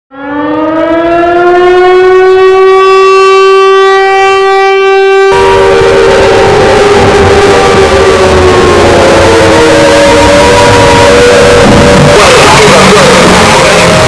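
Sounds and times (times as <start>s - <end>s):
civil defence siren winding up: 0.1s - 14.0s.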